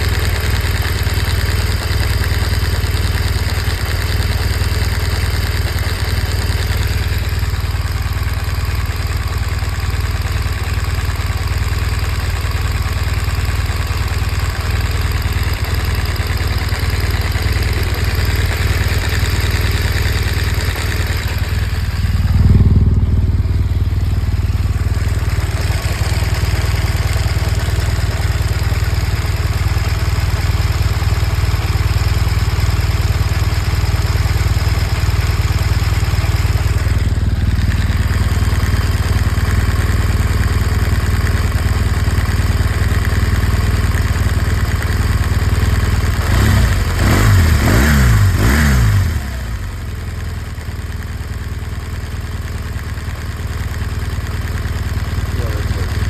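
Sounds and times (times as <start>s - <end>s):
engine ticking noise: 0.0s - 56.0s
motorcycle engine idling: 0.0s - 56.0s
engine revving: 17.7s - 24.2s, 46.0s - 49.8s, 55.3s - 56.0s.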